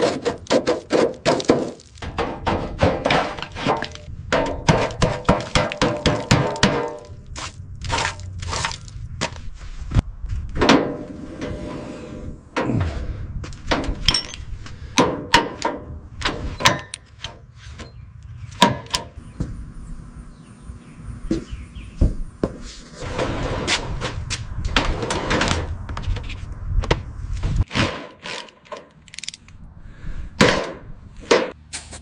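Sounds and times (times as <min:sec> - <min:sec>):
knocks and bangs on car body: 0:00.5 - 0:07.0.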